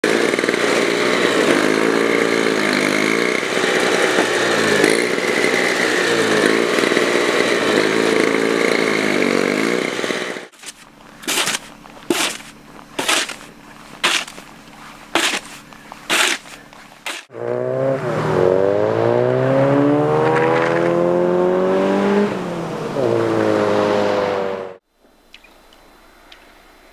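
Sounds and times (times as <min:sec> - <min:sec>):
small engine revving: 0:00.0 - 0:24.8
snow shovel scraping pavement: 0:00.1 - 0:17.3.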